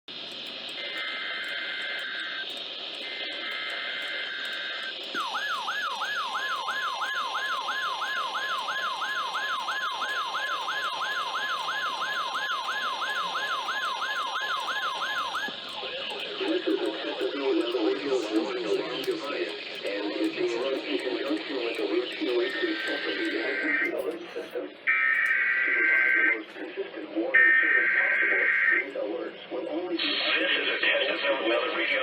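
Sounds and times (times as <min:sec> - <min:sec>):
steady warning alarm tone: 0:00.1 - 0:30.4
radio static hiss: 0:00.1 - 0:32.0
buzzing two-tone data signal: 0:00.2 - 0:26.5.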